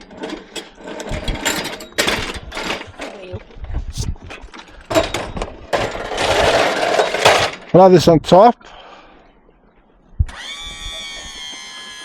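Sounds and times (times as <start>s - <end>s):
scrap metal clattering: 0.0s - 3.3s, 4.7s - 7.7s.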